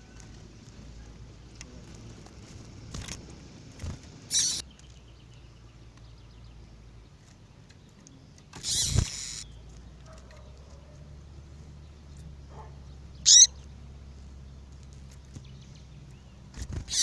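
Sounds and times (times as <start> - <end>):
faint bird twittering: 3.8 - 17.0
sharp high-pitched bird bursts: 4.3 - 4.6, 8.6 - 9.5, 13.2 - 13.5.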